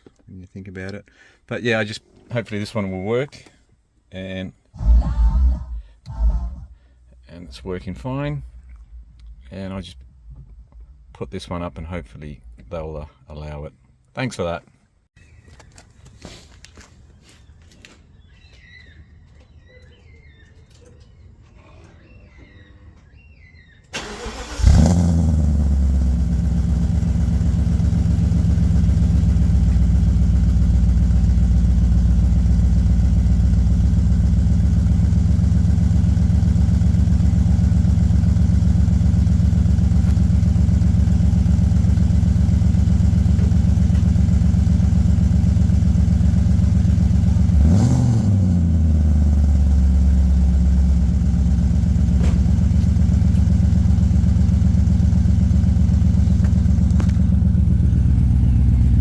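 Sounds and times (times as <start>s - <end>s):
car engine starting and idling: 4.7s - 13.1s, 23.8s - 59.0s
engine revving: 4.8s - 6.9s, 24.0s - 53.5s.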